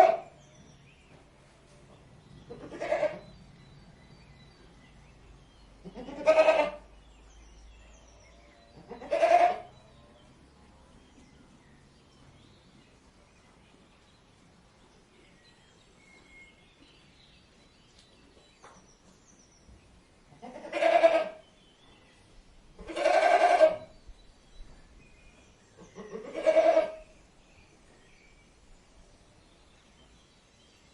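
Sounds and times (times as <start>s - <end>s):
goat bleating: 2.5s - 3.3s, 5.8s - 6.8s, 8.8s - 9.7s, 20.4s - 21.4s, 22.8s - 23.9s, 26.0s - 27.0s.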